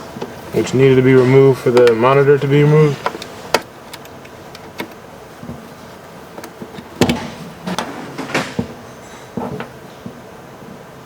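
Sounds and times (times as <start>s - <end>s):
knocks: 7.0s - 8.8s.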